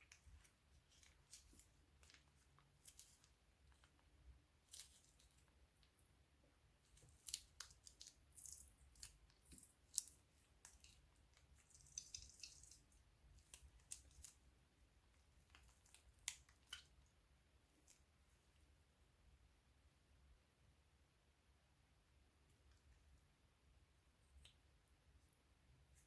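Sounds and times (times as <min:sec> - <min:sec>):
crunchy slime crackling: 0:06.9 - 0:14.5.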